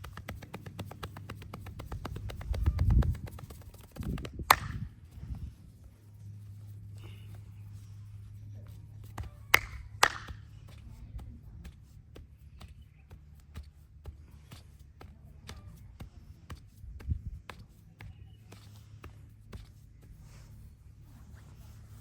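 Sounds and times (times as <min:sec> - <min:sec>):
hands tapping on body: 0:00.0 - 0:05.4, 0:08.8 - 0:20.6.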